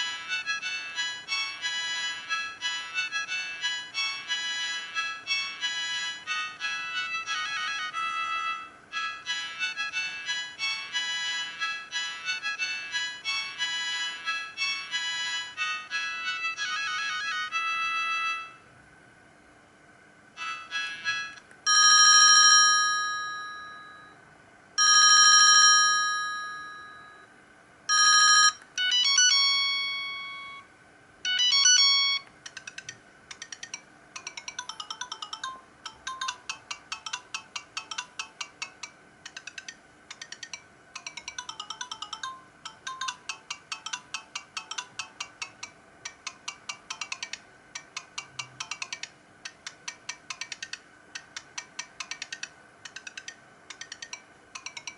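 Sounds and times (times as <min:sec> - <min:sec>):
fast beeping ringtone tune: 0:20.4 - 0:24.2, 0:24.8 - 0:27.3, 0:27.9 - 0:45.7, 0:46.4 - 0:47.4, 0:48.1 - 0:49.1.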